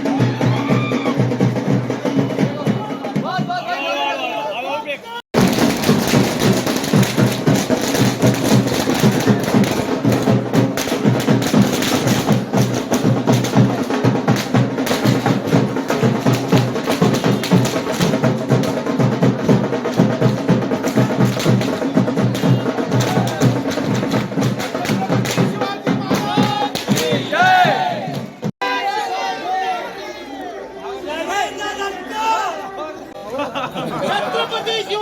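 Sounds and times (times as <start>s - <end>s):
loud drum-driven music: 0.0s - 4.0s, 5.3s - 28.5s.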